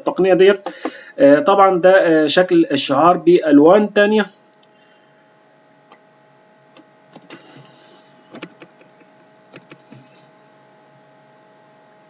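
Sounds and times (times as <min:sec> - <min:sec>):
faint electrical hum: 0:00.0 - 0:12.0
computer mouse clicking: 0:06.8 - 0:07.4, 0:08.3 - 0:10.0.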